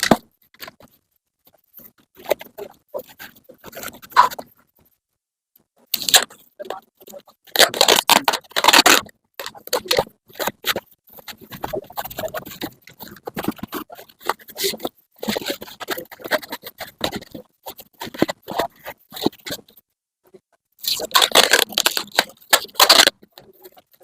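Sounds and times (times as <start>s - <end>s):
scraping and rustling handling noises: 20.5s - 24.0s.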